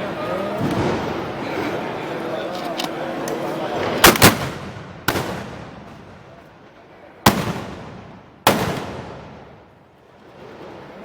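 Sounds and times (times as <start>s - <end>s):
loud gunpowder bangs with echo: 4.0s - 6.1s, 7.3s - 9.6s.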